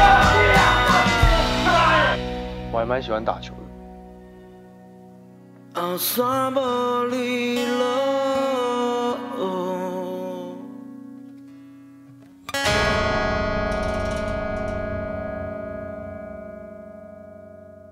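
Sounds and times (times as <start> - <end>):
person singing over guitar: 0.0 - 2.2, 5.7 - 11.0
guitar chord ringing: 0.0 - 17.9.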